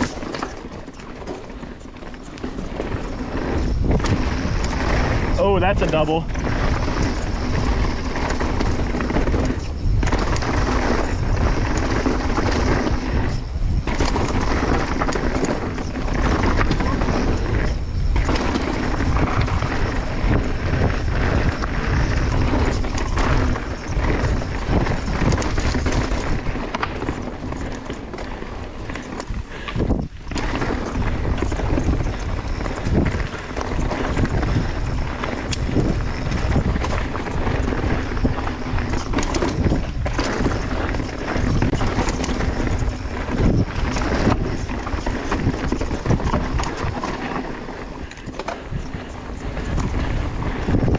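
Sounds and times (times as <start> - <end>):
tyres rolling over rock: 0.0 - 13.2
bike rattling over rocks: 0.0 - 50.9
wind buffeting microphone: 0.0 - 50.9.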